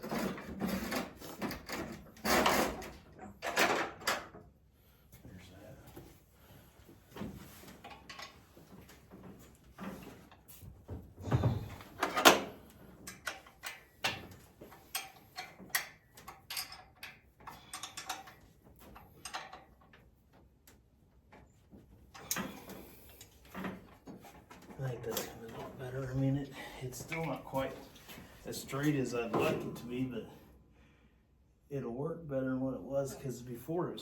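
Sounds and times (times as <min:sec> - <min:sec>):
metal tools knocking and scraping: 0:11.2 - 0:20.0.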